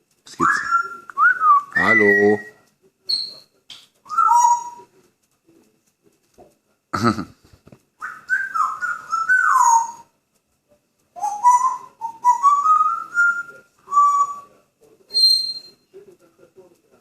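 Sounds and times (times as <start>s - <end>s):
parrot whistling: 0.3s - 3.5s, 4.1s - 4.9s, 8.0s - 10.1s, 11.2s - 14.5s, 15.1s - 15.8s.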